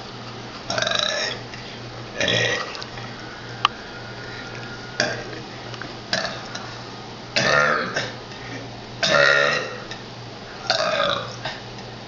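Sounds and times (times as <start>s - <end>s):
person burping letters: 7.4s - 8.2s, 9.0s - 9.8s.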